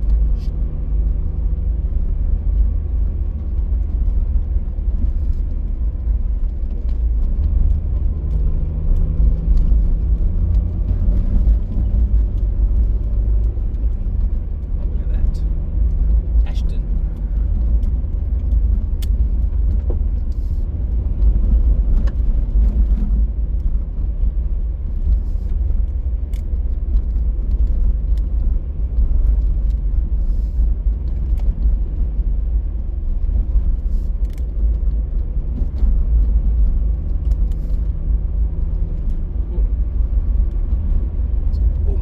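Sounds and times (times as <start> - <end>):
car engine hum: 0.0 - 42.0
road and wind noise: 0.0 - 42.0.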